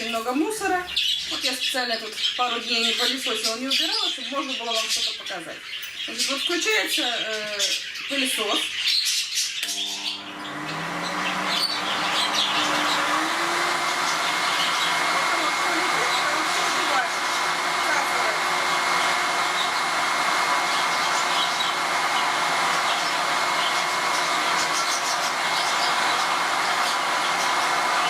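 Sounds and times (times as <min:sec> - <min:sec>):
vacuum cleaner motor running: 0:09.6 - 0:28.0.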